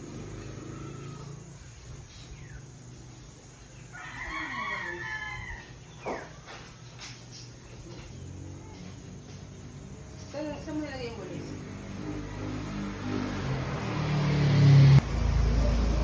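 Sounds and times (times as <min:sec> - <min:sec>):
rooster crowing: 0:03.8 - 0:06.0.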